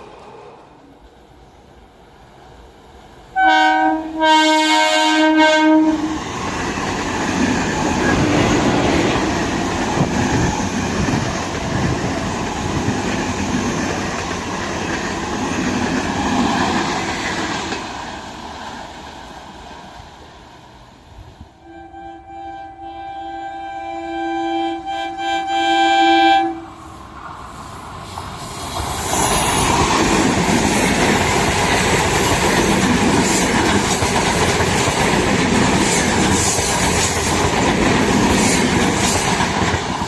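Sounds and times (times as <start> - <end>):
train passing with rumble: 0.0 - 22.4, 26.2 - 40.0
train horn blasts: 3.3 - 6.2, 21.6 - 26.9
train wheel clatter: 6.2 - 20.0, 28.1 - 40.0.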